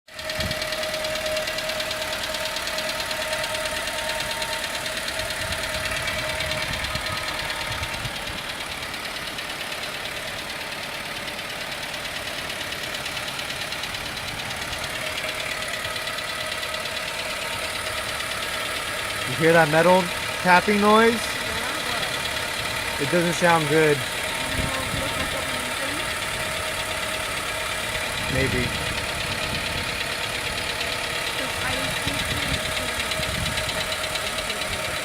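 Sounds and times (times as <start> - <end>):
car engine idling: 0.0 - 35.0.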